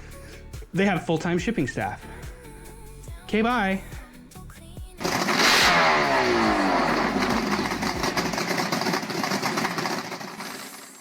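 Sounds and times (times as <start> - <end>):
engine running: 5.0 - 11.0.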